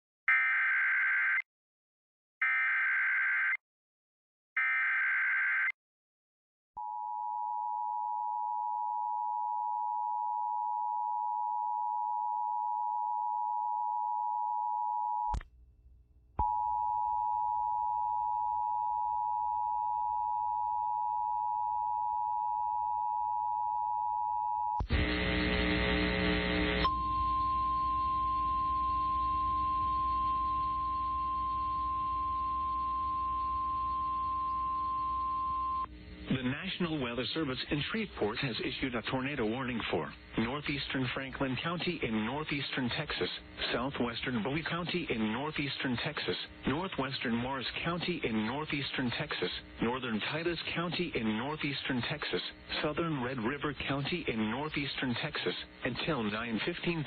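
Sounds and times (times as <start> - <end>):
mix of noise and tones: 24.8 - 57.0
two-tone attention signal: 26.8 - 35.9.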